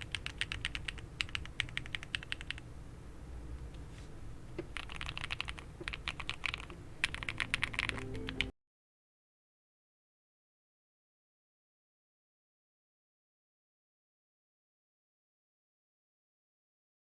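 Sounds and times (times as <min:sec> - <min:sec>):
mechanical keyboard typing: 0:00.0 - 0:02.6, 0:04.7 - 0:08.5.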